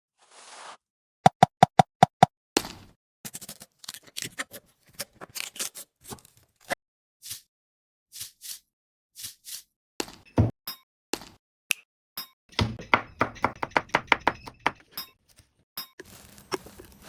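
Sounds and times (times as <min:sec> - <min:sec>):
kitchen knocks: 0:12.5 - 0:14.9
irregular taps and clicks: 0:12.6 - 0:14.9.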